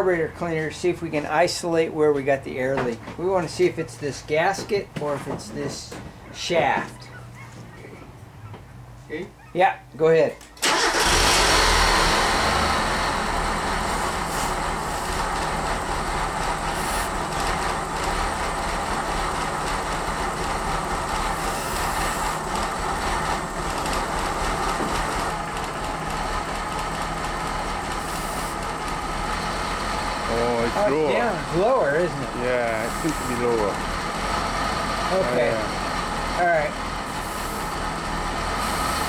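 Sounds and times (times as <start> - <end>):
car engine idling roughly: 10.6 - 39.0.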